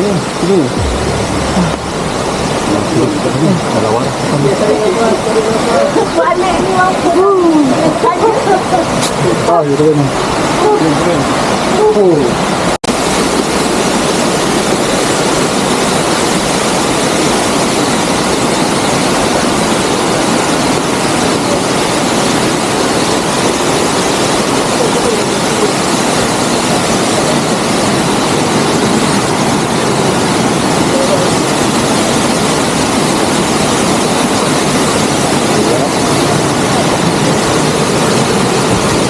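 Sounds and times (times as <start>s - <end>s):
water rushing: 0.0s - 39.0s
wind: 0.0s - 39.0s
motorboat engine running: 0.7s - 3.6s.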